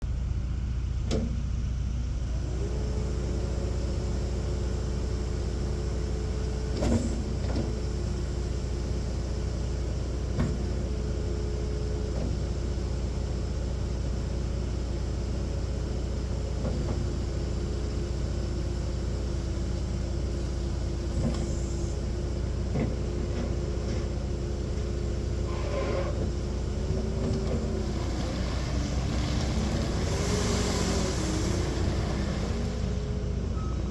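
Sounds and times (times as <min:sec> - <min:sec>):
diesel engine running: 0:00.0 - 0:33.9
machine clunks and knocks: 0:01.0 - 0:01.4, 0:10.3 - 0:10.9.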